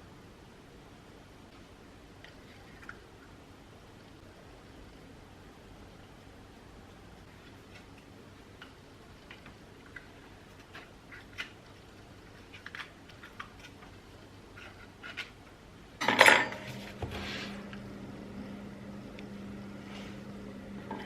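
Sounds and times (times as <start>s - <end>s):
fan motor clatter and hum: 16.0s - 21.0s.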